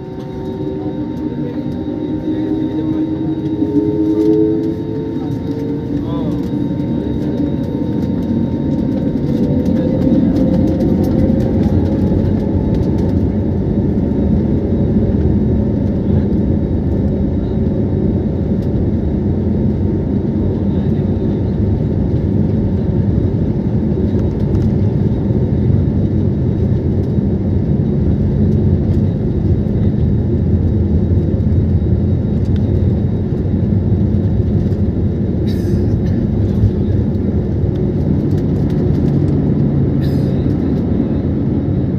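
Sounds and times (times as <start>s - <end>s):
jet engines spooling up: 0.0s - 15.4s
plane rolling down runway: 0.0s - 41.9s.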